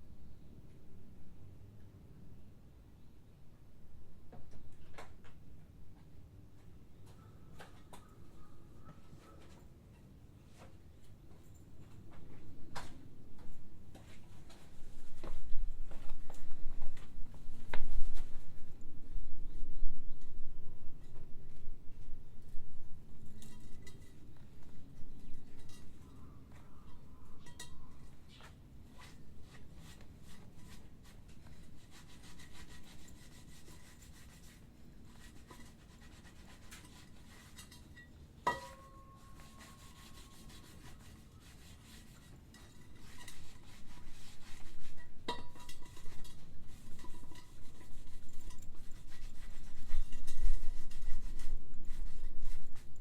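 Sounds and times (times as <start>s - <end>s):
rubbing and scraping on tyre: 28.9s - 53.0s.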